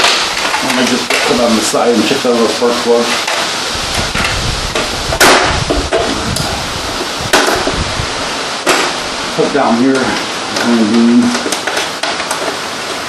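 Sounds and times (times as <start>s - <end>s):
outboard motor parts clunking: 3.2s - 7.9s, 8.6s - 13.0s
low handling rumble: 3.7s - 11.4s.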